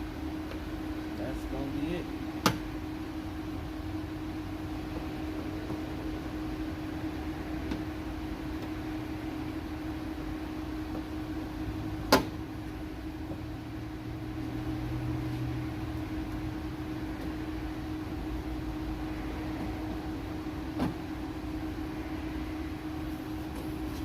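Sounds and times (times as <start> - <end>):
steady mechanical hum: 0.0 - 24.0.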